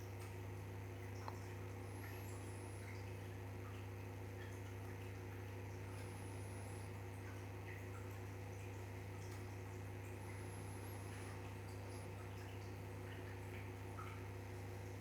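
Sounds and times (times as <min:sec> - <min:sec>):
steady low hum: 0:08.6 - 0:12.7.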